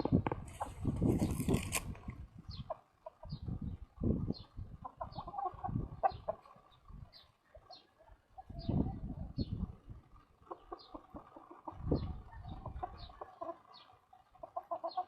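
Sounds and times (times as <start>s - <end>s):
hens clucking: 0.0s - 15.0s.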